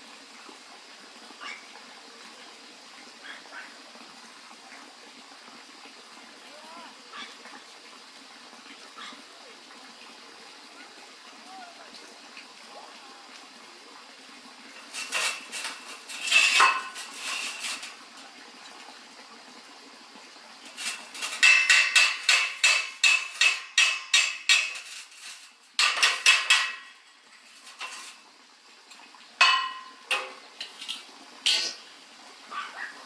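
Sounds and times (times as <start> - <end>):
metal clinks and taps: 20.8 - 25.2.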